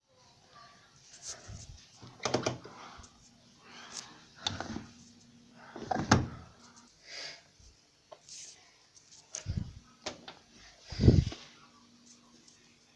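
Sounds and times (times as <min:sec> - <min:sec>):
washing machine door clunking: 0:05.8 - 0:06.4.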